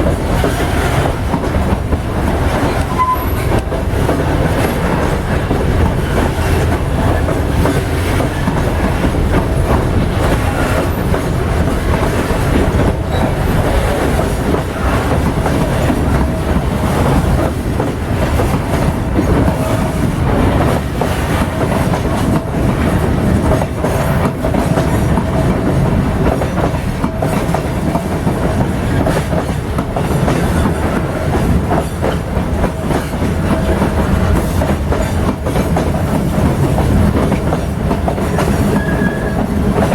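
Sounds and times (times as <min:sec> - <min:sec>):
freight train rumbling past: 0:00.0 - 0:39.9
wheels clacking over rail joints: 0:00.0 - 0:39.9.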